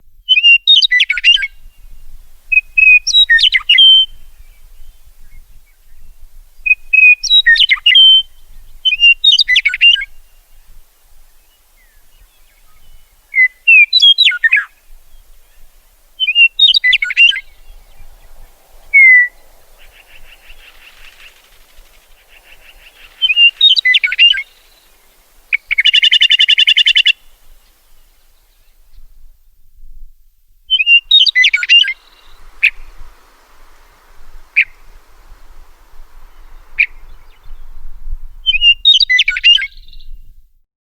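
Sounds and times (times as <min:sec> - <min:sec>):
meadowlark whistled song: 0:00.0 - 0:30.0, 0:30.7 - 0:40.5
buzzy rattling bird chatter: 0:16.9 - 0:27.1.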